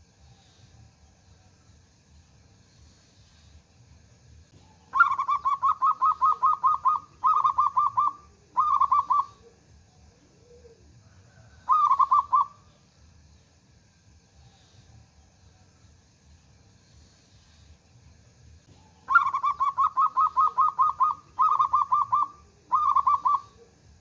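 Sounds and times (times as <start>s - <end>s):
dove cooing: 4.6s - 12.7s, 18.7s - 23.9s.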